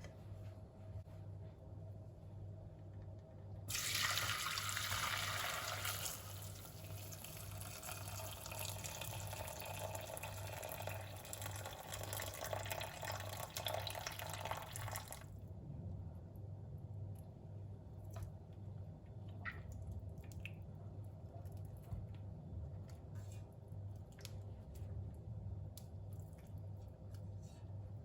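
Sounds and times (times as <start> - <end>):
tap water running into sink: 3.7 - 15.2.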